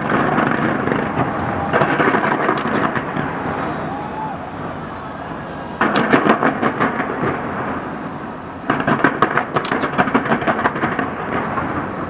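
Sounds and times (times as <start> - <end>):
fireworks crackling: 0.0 - 12.0.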